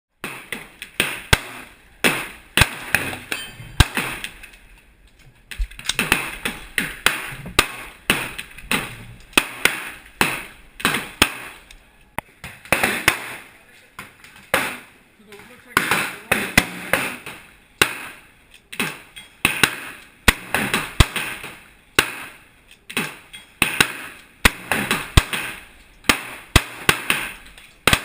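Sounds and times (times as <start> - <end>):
rifle shots with echo: 0.2 - 4.4, 6.0 - 11.7, 12.6 - 13.6, 15.7 - 18.3, 18.9 - 22.4, 23.0 - 28.0.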